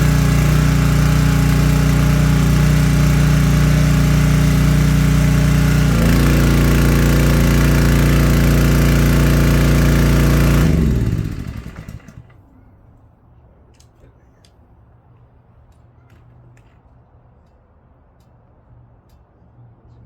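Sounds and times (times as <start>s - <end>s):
pressure washer engine running: 0.0s - 12.3s.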